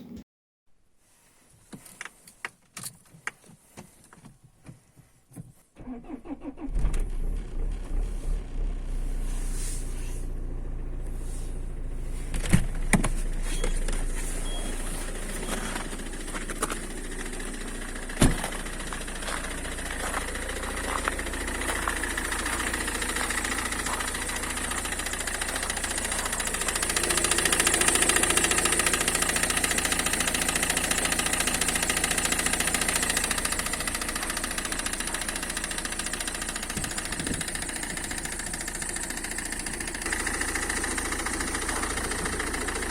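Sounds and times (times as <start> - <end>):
diesel engine idling: 5.8 - 42.9
engine knock: 14.6 - 42.9.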